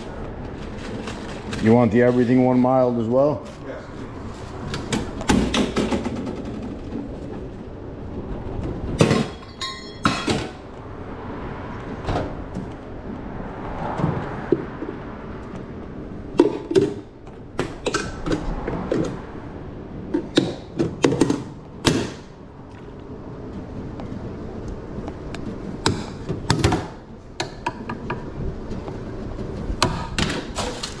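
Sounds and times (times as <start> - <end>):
containers and utensils clunking: 8.7 - 10.6.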